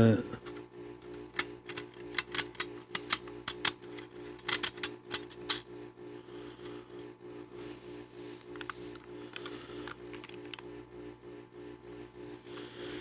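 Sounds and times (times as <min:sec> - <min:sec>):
metallic clicks of pistol parts: 0:00.4 - 0:05.6.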